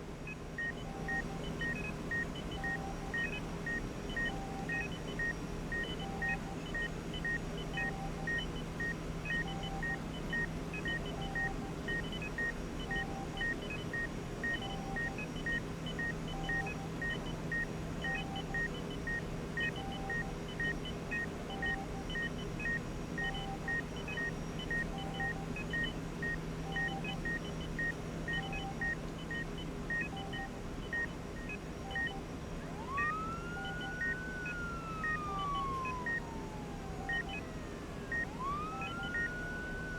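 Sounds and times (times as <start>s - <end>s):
medical monitors beeping: 0.3s - 39.9s
low steady hum: 18.0s - 39.9s
siren rising and falling: 31.9s - 39.9s.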